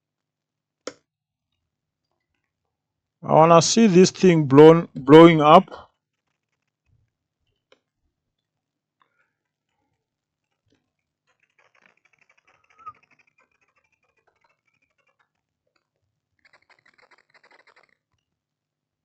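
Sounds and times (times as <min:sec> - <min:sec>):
crackling and scratching on circuit board: 0:05.9 - 0:18.6.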